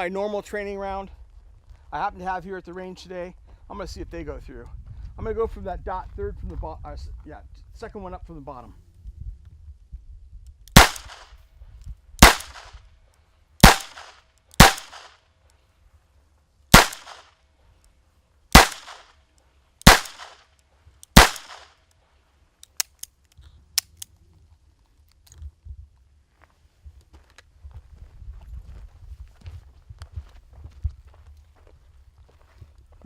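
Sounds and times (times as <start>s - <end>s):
handgun shots: 10.7s - 11.3s, 12.2s - 12.8s, 13.6s - 15.2s, 16.7s - 17.3s, 18.6s - 19.2s, 19.8s - 20.5s, 21.1s - 21.7s.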